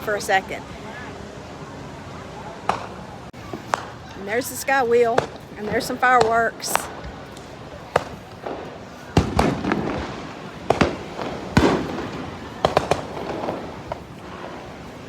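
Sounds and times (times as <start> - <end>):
fireworks bangs: 2.5 - 15.0
rumbling echo: 5.1 - 15.0.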